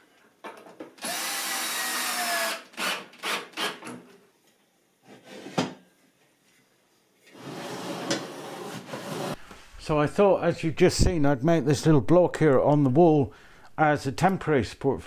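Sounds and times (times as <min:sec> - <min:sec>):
power drill running: 0:01.0 - 0:03.8.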